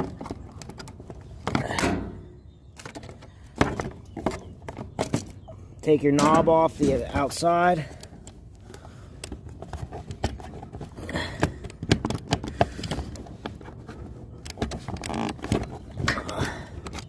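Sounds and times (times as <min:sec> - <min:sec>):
plastic and metal clicks and scrapes: 0:08.0 - 0:17.0.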